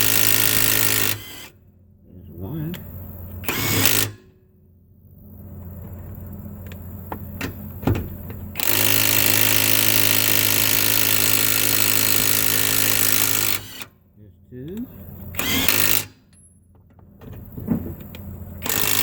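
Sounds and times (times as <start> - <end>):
impact wrench hammering: 3.4 - 4.3, 18.6 - 19.0.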